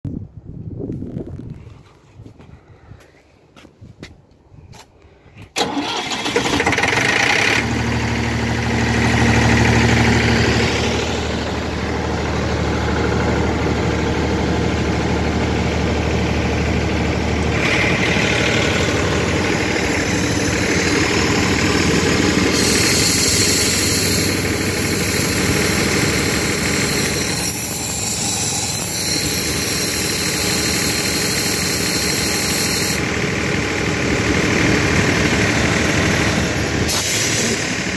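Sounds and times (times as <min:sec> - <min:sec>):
air compressor running: 0:05.6 - 0:37.9
low hum: 0:07.6 - 0:29.8.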